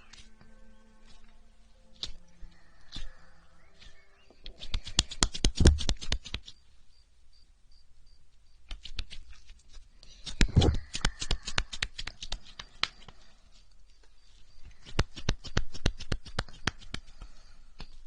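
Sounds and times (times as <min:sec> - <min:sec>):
fingers rubbing a microphone: 0:08.7 - 0:13.0.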